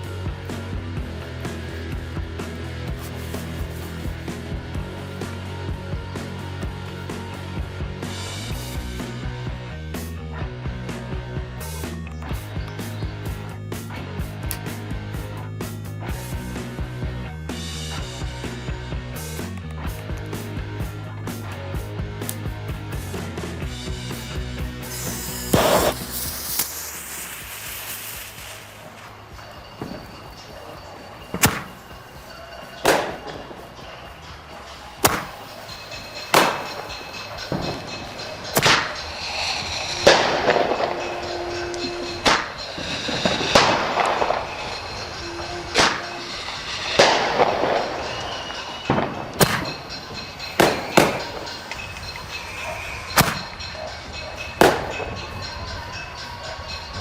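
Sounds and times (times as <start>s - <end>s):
loud firework bangs: 24.2s - 34.3s, 34.9s - 55.7s.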